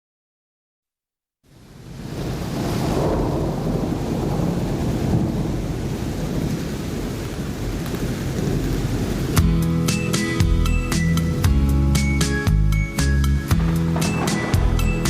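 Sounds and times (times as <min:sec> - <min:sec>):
rain: 0:01.5 - 0:11.6, 0:12.6 - 0:15.0
rolling thunder: 0:01.8 - 0:09.4, 0:13.5 - 0:15.0.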